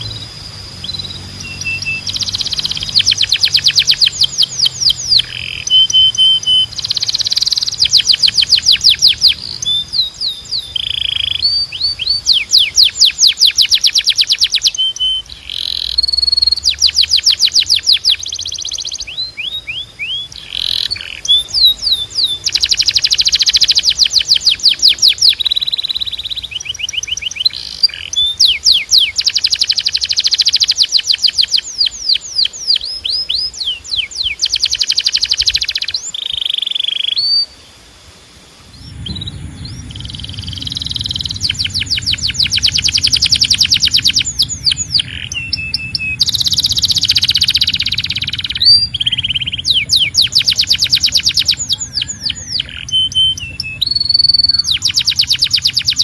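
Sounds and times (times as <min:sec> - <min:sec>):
canary singing: 0:00.0 - 0:37.6, 0:38.6 - 0:56.0
low rumble: 0:38.5 - 0:56.0.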